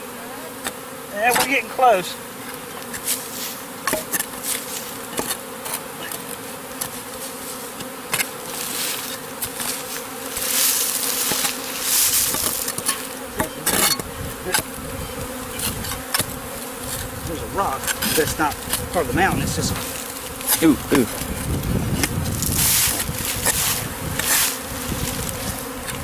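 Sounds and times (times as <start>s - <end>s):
honeybee swarm humming: 0.0s - 26.0s
shovel digging in soil: 2.9s - 6.2s, 6.8s - 14.7s, 17.7s - 19.1s, 22.0s - 24.6s
dirt scraping rush: 6.9s - 14.8s, 15.5s - 26.0s.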